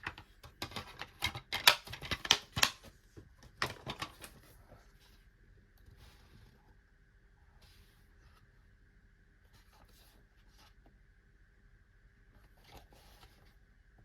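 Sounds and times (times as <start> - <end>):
plastic cases clicking and knocking: 0.0 - 4.3.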